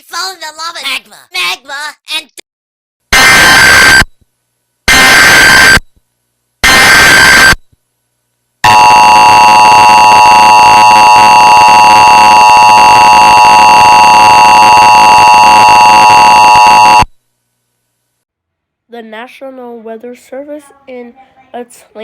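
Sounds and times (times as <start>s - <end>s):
multi-tone alarm: 3.2s - 4.1s, 4.9s - 5.8s, 6.6s - 7.6s, 8.6s - 17.1s.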